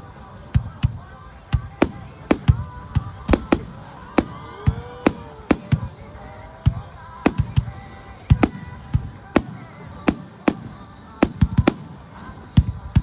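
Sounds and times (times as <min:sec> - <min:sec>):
firework shells bursting: 0:01.8 - 0:06.3.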